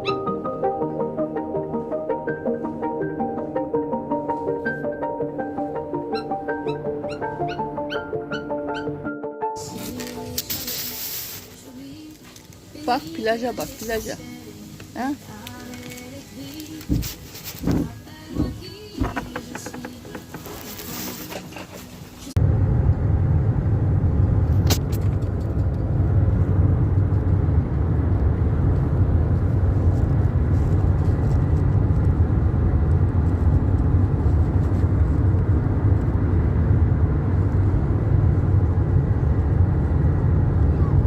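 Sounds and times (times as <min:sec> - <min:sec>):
loud low rumble: 0:22.4 - 0:41.0.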